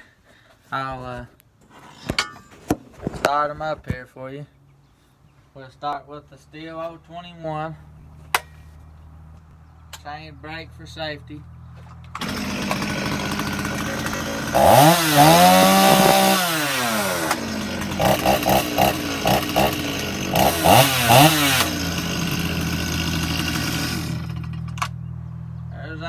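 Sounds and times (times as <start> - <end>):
chainsaw idling and revving: 12.2 - 24.9.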